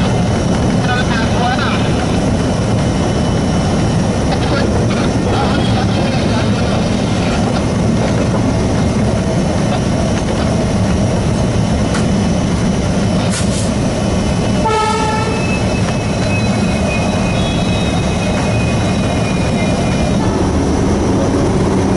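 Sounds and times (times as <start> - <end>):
diesel locomotive engine chugging: 0.0 - 21.9
locomotive horn blast: 14.6 - 15.8, 17.2 - 18.4.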